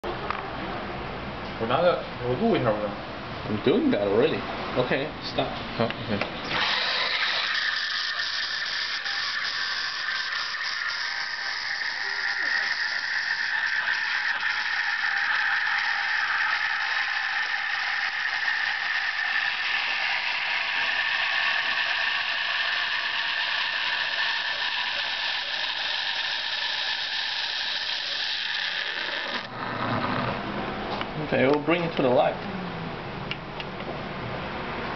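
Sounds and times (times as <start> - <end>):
steam wand frothing milk: 6.5 - 30.4.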